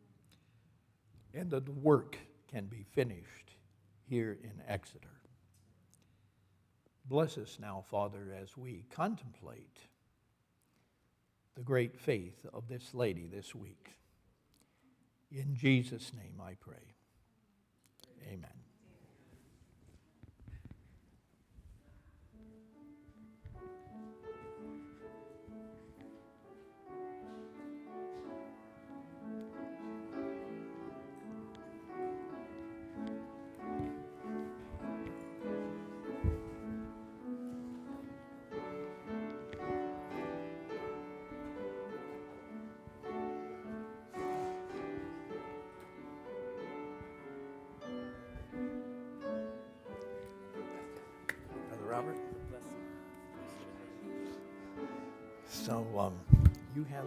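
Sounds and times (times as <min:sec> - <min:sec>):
piano playing slow chords: 0:22.5 - 0:57.0.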